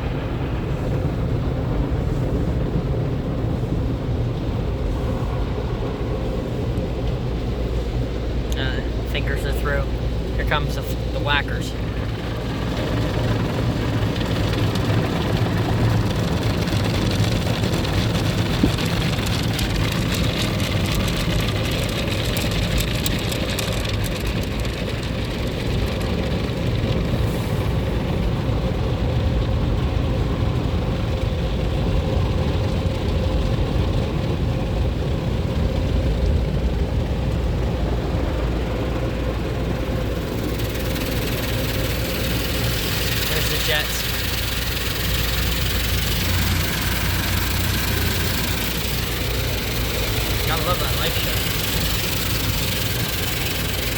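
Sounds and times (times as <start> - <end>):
steady low hum: 0.0 - 53.9
water spraying on car: 0.0 - 53.9
rapid pattering: 11.8 - 27.1, 39.5 - 53.9
car wash brushes slapping: 12.2 - 26.4, 39.9 - 53.9.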